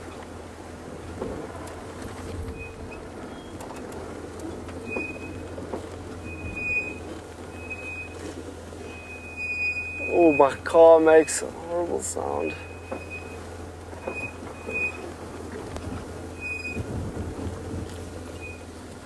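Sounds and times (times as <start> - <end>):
vehicle engine humming: 0.0 - 19.0
high squeal: 4.8 - 5.5, 6.2 - 8.2, 8.8 - 11.5, 16.3 - 16.9
knocks and clatters: 13.9 - 19.0.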